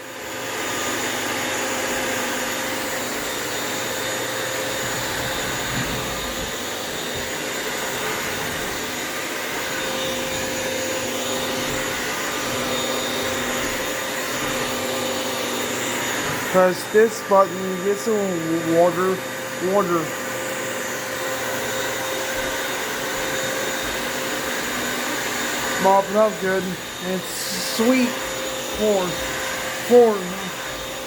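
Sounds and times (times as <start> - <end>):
vacuum mop motor whirring: 0.0 - 31.0.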